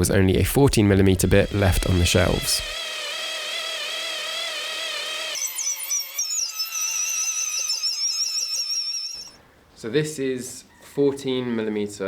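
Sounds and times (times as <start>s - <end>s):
electric drill drilling into wood: 1.2s - 9.3s.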